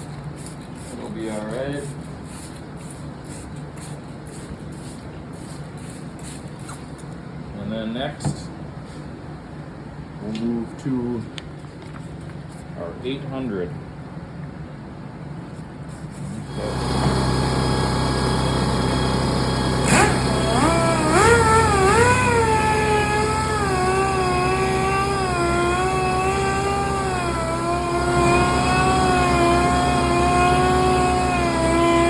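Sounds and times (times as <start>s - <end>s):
steady low hum: 0.0s - 32.0s
power sander whining: 16.5s - 32.0s.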